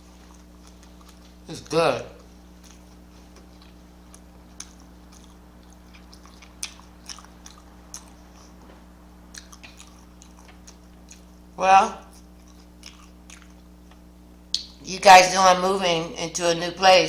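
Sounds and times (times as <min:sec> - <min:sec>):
person chewing food: 0:00.0 - 0:01.4, 0:02.2 - 0:14.7
low electrical hum: 0:00.0 - 0:17.0.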